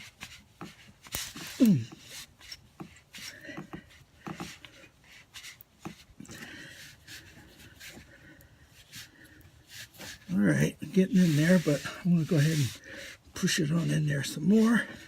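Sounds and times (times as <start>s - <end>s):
tool clicking and rubbing in tire: 0.0s - 15.0s
person grunting: 1.6s - 1.9s.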